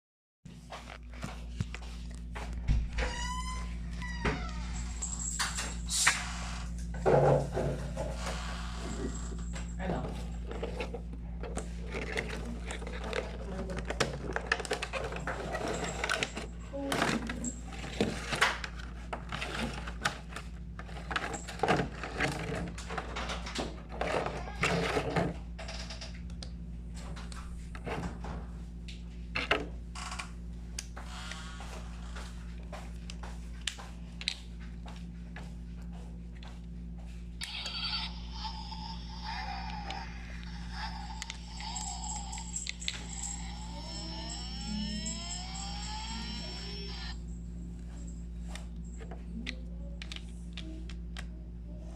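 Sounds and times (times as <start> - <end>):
low hum: 0.6 - 51.9
packaging clicking and crinkling: 10.4 - 25.2.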